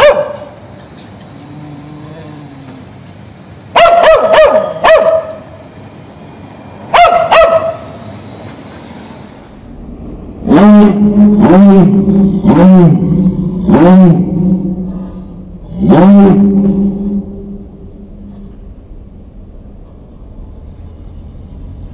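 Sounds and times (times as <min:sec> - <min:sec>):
dog barking: 0:00.0 - 0:00.6, 0:03.7 - 0:05.4, 0:06.9 - 0:08.0
steady low drone: 0:00.5 - 0:03.7, 0:07.8 - 0:21.9.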